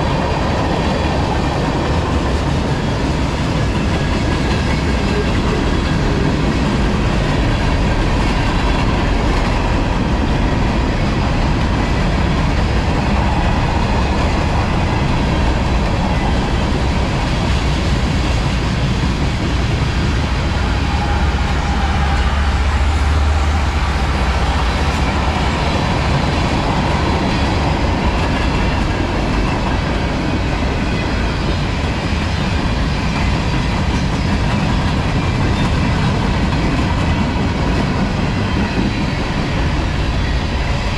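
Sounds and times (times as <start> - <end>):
steel wheels on rail: 0.0 - 40.9.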